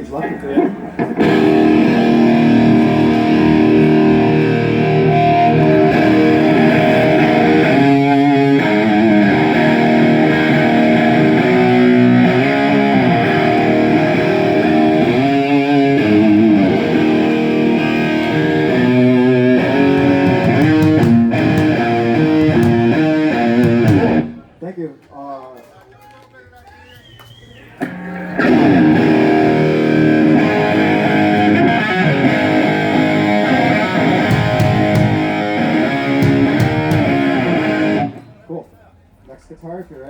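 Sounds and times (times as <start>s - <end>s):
distorted electric guitar: 0.6s - 24.5s, 27.8s - 38.3s.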